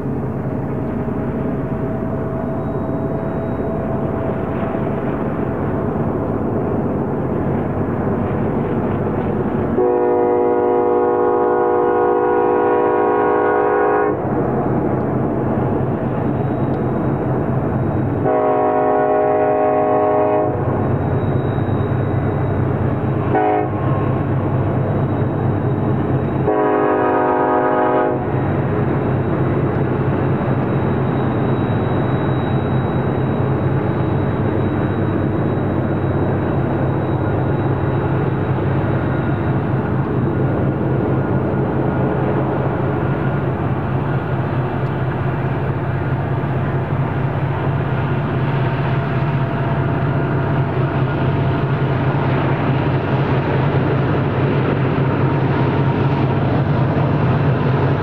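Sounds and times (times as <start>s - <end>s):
locomotive engines droning: 0.0s - 58.0s
passing train rumble: 0.0s - 58.0s
locomotive horn: 9.8s - 14.2s, 18.2s - 20.6s, 23.2s - 24.2s, 26.4s - 28.3s.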